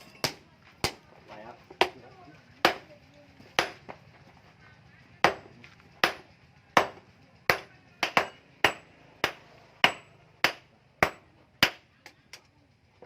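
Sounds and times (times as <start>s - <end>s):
hammer striking metal: 5.2s - 11.9s.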